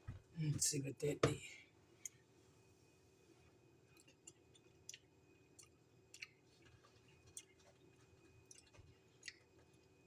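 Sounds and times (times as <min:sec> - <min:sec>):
faint steady hum: 0:00.0 - 0:10.0
soft chewing mouth clicks: 0:03.9 - 0:09.7.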